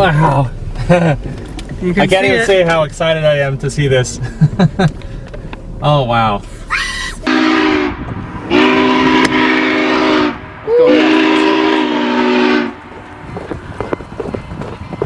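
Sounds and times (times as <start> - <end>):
steam locomotive whistle blasts: 7.2 - 13.6.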